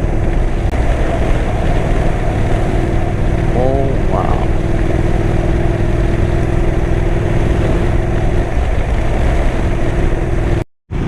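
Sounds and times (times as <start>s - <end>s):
motorcycle engine running: 0.0s - 11.0s
wind noise: 0.0s - 11.0s
steady tone: 2.1s - 5.2s.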